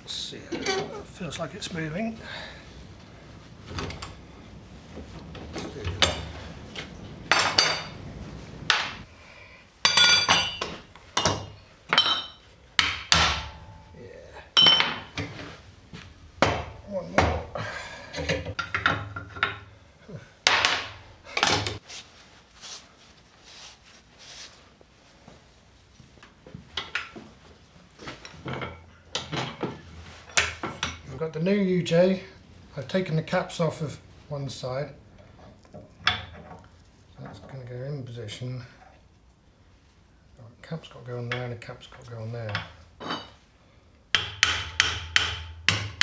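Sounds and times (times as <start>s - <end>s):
light metal knocks and clinks: 5.1s - 8.1s, 9.8s - 13.9s, 14.6s - 15.4s, 28.2s - 31.1s
hammer striking steel: 9.9s - 13.9s, 16.4s - 17.6s, 44.2s - 46.0s.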